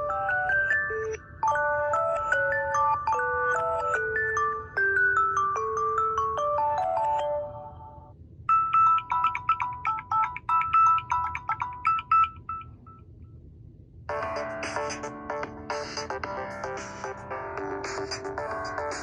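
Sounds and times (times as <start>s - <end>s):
phone ringtones playing: 0.0s - 12.8s.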